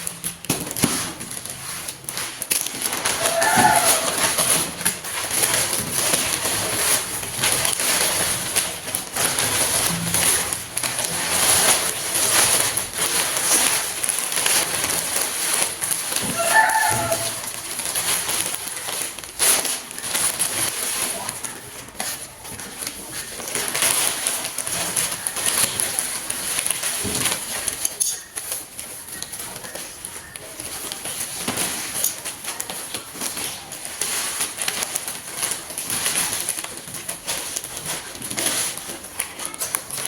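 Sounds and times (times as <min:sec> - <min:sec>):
bird call: 0:03.2 - 0:04.5.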